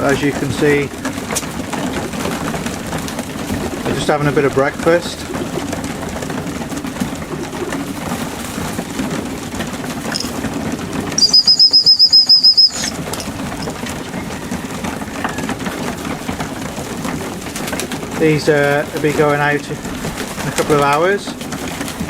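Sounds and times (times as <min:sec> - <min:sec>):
pigeons cooing: 0:00.0 - 0:22.0
shuffling: 0:00.0 - 0:22.0
wing flutters: 0:00.0 - 0:22.0
high pulsing trill: 0:11.2 - 0:12.9.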